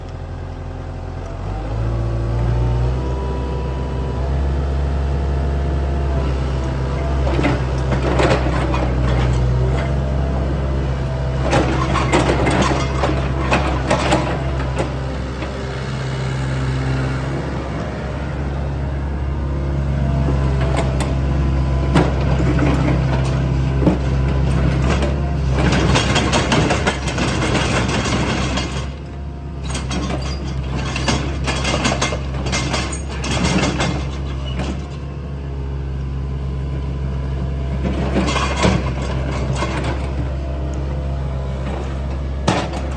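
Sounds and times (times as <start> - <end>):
excavator diesel engine running: 0.0 - 42.9
metallic clanking and squealing: 11.4 - 14.8, 29.6 - 35.0.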